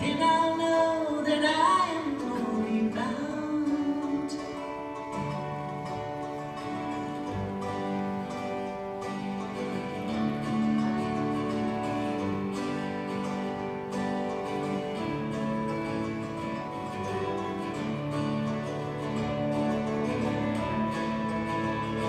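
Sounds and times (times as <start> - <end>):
bass: 0.0 - 22.0
strummed acoustic guitar: 0.0 - 22.0
violin: 4.6 - 22.0.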